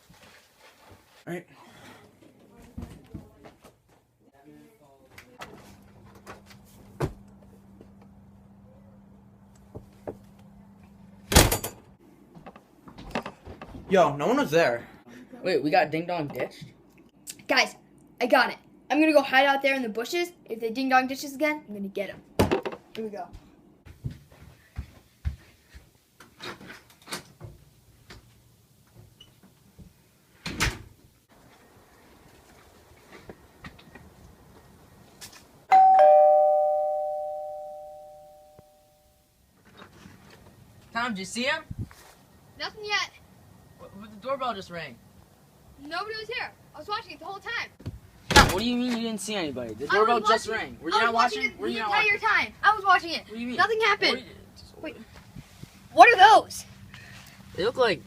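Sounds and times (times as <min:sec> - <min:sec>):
faint steady hum: 0:35.7 - 0:39.0.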